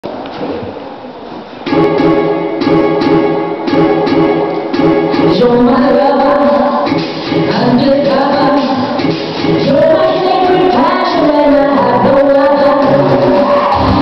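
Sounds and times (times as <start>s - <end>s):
pop song with female vocal: 5.2s - 14.0s.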